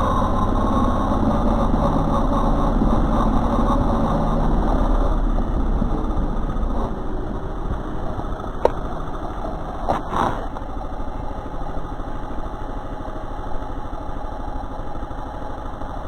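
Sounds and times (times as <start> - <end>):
car engine: 0.0 - 12.6
road noise inside moving car: 0.0 - 16.0.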